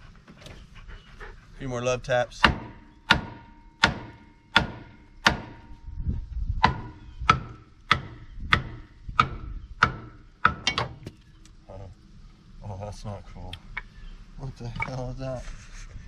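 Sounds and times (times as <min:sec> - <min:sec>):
hammer striking steel: 0:02.4 - 0:05.8, 0:06.6 - 0:11.1.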